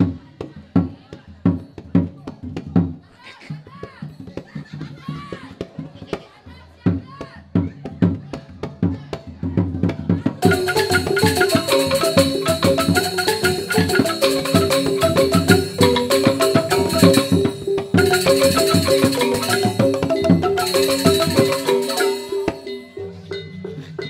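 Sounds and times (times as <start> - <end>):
bamboo xylophones playing fast: 10.4 - 24.0
drum strokes: 10.4 - 24.0.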